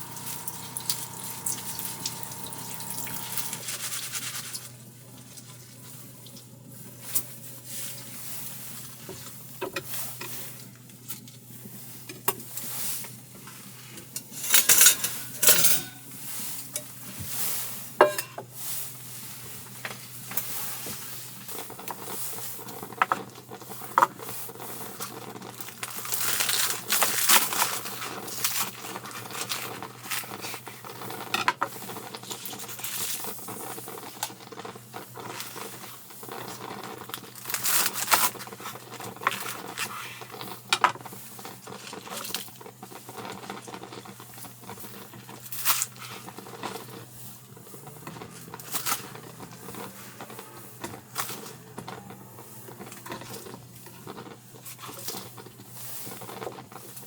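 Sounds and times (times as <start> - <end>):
food sizzling: 0.0 - 4.8, 18.0 - 18.4
cookware and utensils clinking: 14.1 - 17.0, 18.0 - 18.5.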